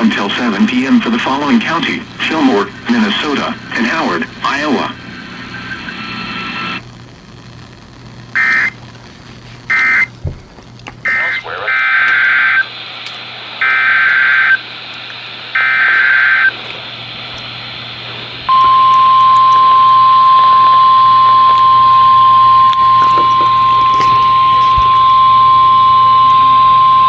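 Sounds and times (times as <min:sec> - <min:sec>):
radio hiss and hum: 0:00.0 - 0:27.0
steady warning alarm tone: 0:08.4 - 0:08.8, 0:09.7 - 0:10.1, 0:11.0 - 0:12.7, 0:13.6 - 0:14.6, 0:15.5 - 0:27.0.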